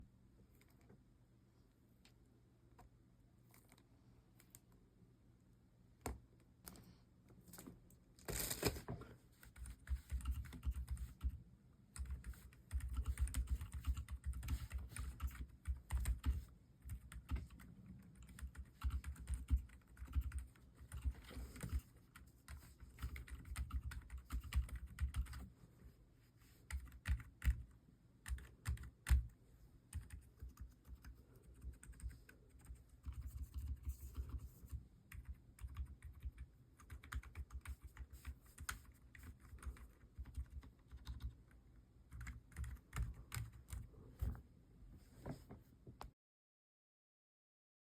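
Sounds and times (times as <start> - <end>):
dampened keyboard keystrokes: 9.4 - 11.4, 12.0 - 21.9, 22.5 - 25.4, 26.7 - 41.5, 42.1 - 44.4.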